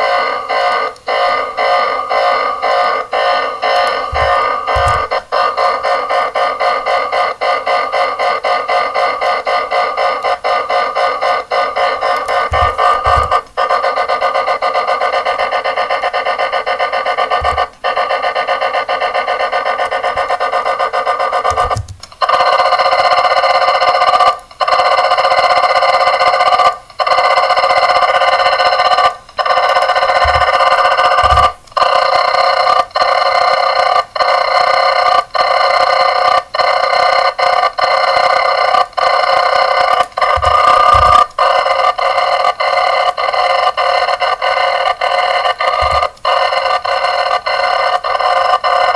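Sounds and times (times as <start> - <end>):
alarm clock ringing: 8.4 - 33.9, 37.2 - 48.9.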